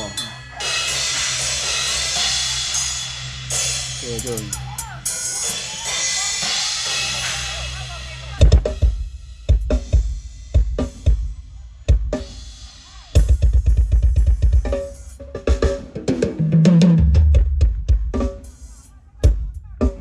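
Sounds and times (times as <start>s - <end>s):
kick drum: 8.4s - 11.2s, 17.4s - 18.2s
snare drum: 8.4s - 11.2s.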